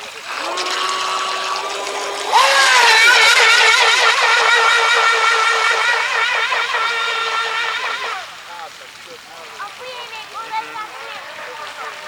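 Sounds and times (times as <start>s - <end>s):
electric motor and propeller whine: 1.6s - 8.3s.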